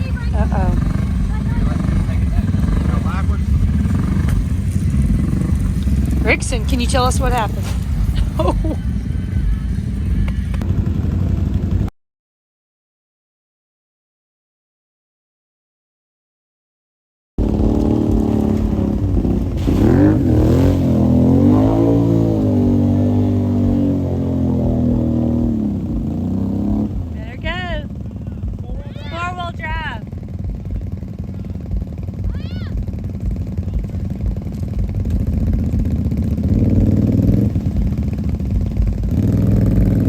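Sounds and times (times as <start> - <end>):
off-road vehicle engine revving: 0.0 - 11.9, 17.4 - 40.0.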